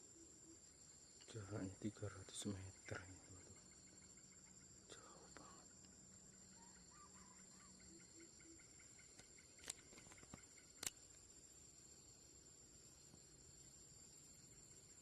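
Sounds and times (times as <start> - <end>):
soft chirps: 0.0 - 12.2
high-pitched insect drone: 0.0 - 15.0
sharp clicks: 9.1 - 11.0.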